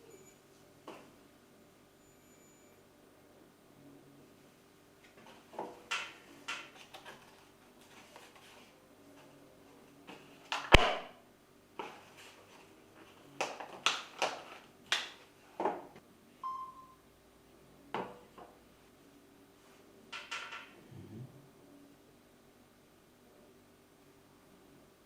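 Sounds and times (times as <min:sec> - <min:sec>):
short single beep: 0:16.4 - 0:17.0.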